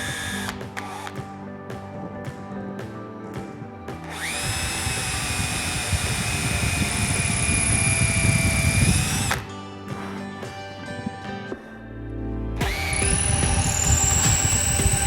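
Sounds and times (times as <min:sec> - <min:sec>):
electric power tool whining: 0:00.0 - 0:01.2, 0:04.0 - 0:10.2, 0:12.6 - 0:15.0.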